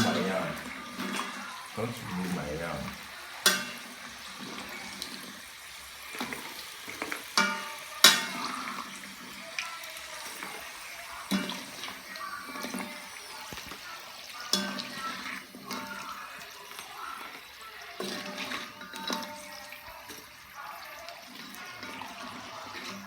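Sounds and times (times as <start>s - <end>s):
hot oil sizzling: 0.0s - 23.0s
metal spoon clinking on pot: 3.4s - 4.0s, 7.0s - 8.9s, 14.5s - 16.1s.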